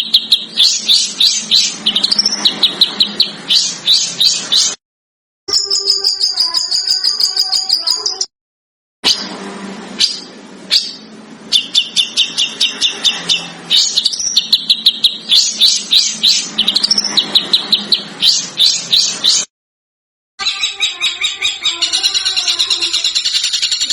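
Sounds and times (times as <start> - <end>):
songbird calling high sharp notes: 0.0 - 4.8.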